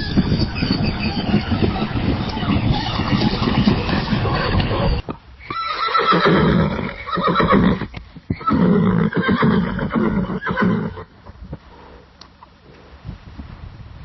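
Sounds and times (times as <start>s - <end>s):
horse neighing: 0.0s - 11.1s.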